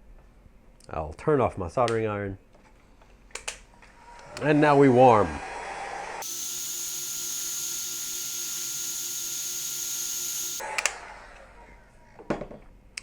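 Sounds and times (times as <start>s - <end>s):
heat gun hissing with whine: 6.2s - 10.6s.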